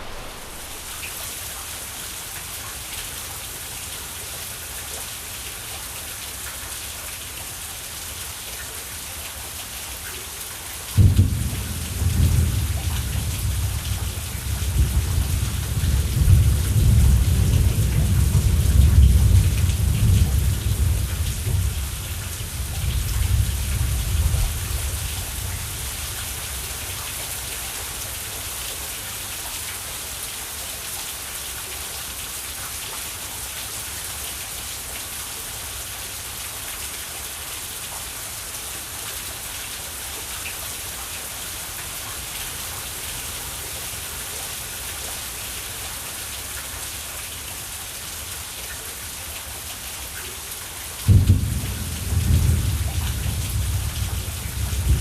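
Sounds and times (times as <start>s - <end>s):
loud thunderclap: 0.0s - 1.2s, 11.0s - 25.6s, 51.1s - 55.0s
thunder rumble: 0.0s - 1.2s, 11.0s - 26.6s, 51.1s - 55.0s
steady rain: 0.0s - 55.0s.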